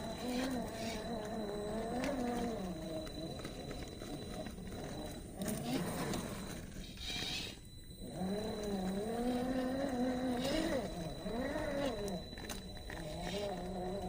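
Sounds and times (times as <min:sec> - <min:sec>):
electric motor whining: 0:00.0 - 0:14.0.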